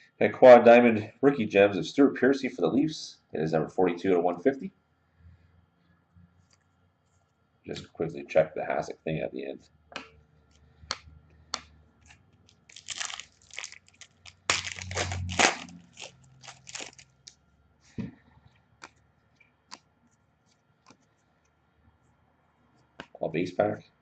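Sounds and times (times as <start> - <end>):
cards being handled: 10.0 - 17.3, 19.7 - 21.1
foil wrapper tearing and crinkling: 12.4 - 17.3.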